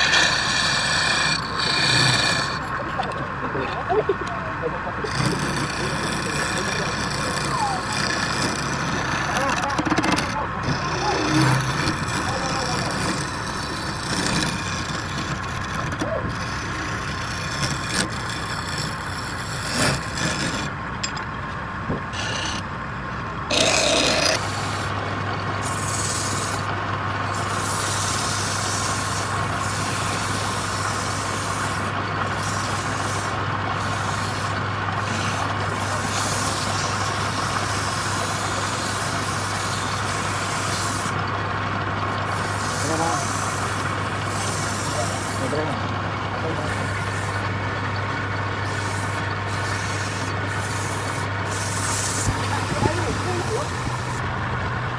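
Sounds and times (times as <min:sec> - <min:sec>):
tool scraping turning wood: 0:00.0 - 0:54.4
wood lathe running: 0:00.0 - 0:54.9.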